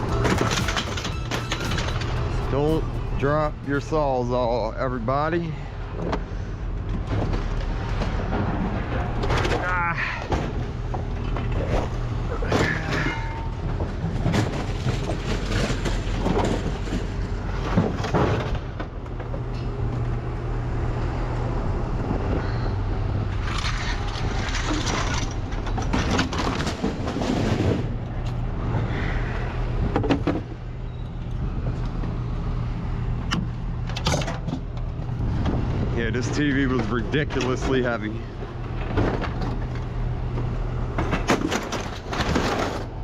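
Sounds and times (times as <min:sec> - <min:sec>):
scrap metal clanking and banging: 0:00.0 - 0:04.5, 0:05.4 - 0:19.9, 0:23.3 - 0:28.4, 0:33.9 - 0:43.0
engine running low rumble: 0:00.0 - 0:43.0.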